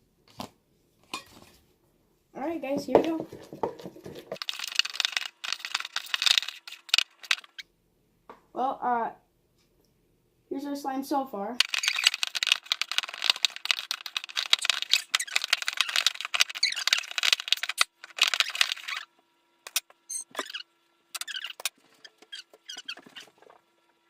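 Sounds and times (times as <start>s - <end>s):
slime squeaks: 4.5s - 7.6s, 11.6s - 23.6s.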